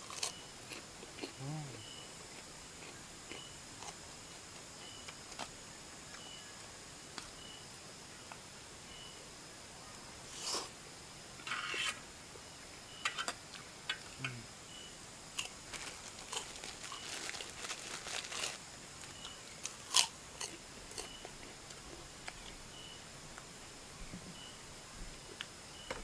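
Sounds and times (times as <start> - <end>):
person chewing noodles: 0.0 - 4.4, 15.4 - 18.6, 19.2 - 22.0.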